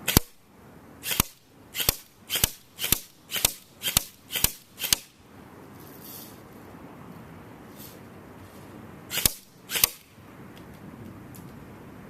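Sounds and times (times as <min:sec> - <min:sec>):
airsoft rifle shots: 0:00.0 - 0:00.4, 0:01.0 - 0:05.1, 0:09.1 - 0:10.1.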